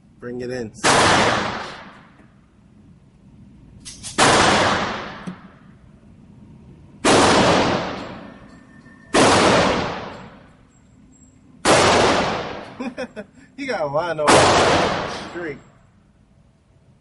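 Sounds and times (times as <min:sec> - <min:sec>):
gunshots with echo: 0:00.8 - 0:02.1, 0:04.2 - 0:05.2, 0:07.0 - 0:08.3, 0:09.1 - 0:10.5, 0:11.6 - 0:12.8, 0:14.2 - 0:15.4.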